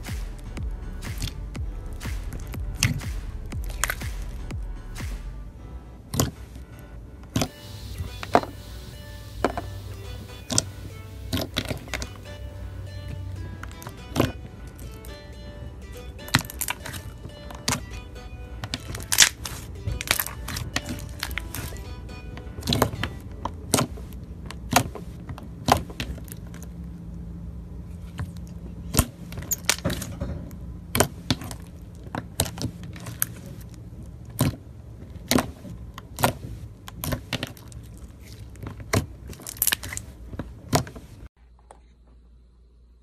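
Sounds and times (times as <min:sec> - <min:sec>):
sharp crackles and clicks: 0:00.0 - 0:05.4
faint low hum: 0:00.0 - 0:43.0.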